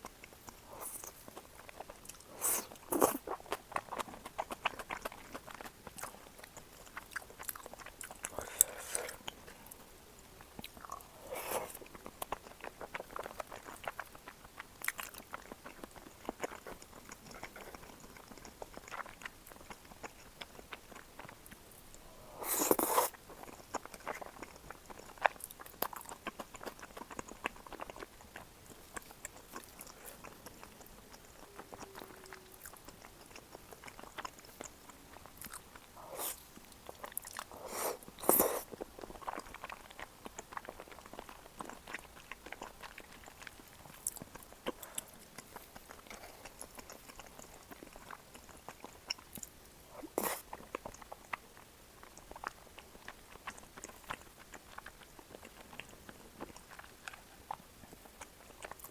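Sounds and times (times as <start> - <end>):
biting and chewing food: 0.0 - 58.9.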